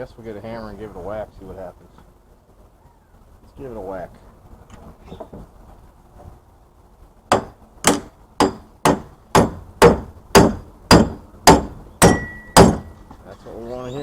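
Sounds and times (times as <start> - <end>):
hammer striking metal housing: 7.3 - 13.0.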